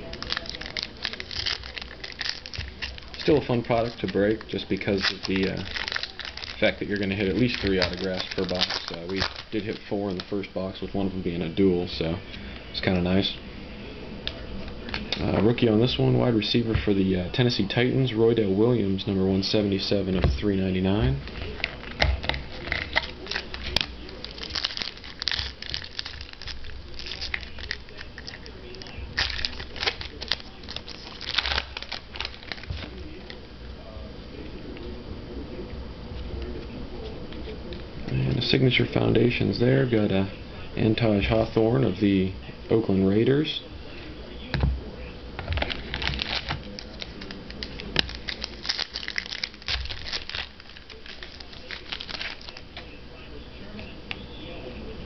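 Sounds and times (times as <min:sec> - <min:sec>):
card pack wrapper crinkling and tearing: 0:00.0 - 0:10.5, 0:21.2 - 0:33.4, 0:45.5 - 0:52.8.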